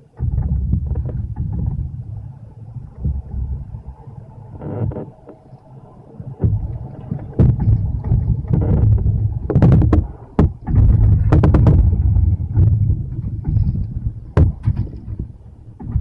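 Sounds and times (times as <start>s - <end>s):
gusty wind buffeting microphone: 0.0s - 16.0s
sharp knocks: 6.4s - 16.0s.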